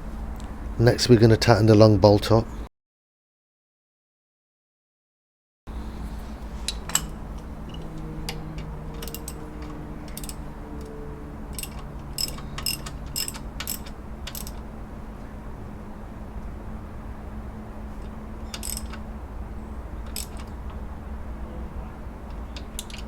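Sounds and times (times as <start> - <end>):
steady low hum: 0.0 - 2.7, 5.7 - 23.0
ratchet wrench clicking: 6.7 - 14.7, 18.0 - 19.1, 20.0 - 20.8, 22.3 - 23.0.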